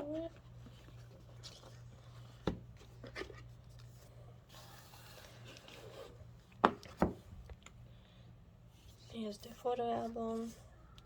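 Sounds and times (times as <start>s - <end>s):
paper rustling: 0.0s - 6.2s.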